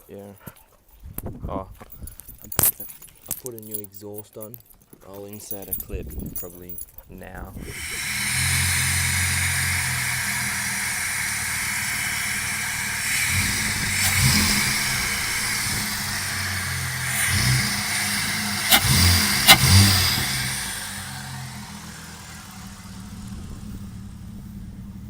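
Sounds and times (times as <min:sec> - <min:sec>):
exhaust cracks: 0:05.7 - 0:25.0
car engine idling: 0:07.6 - 0:25.0
engine throttle blips: 0:07.6 - 0:25.0.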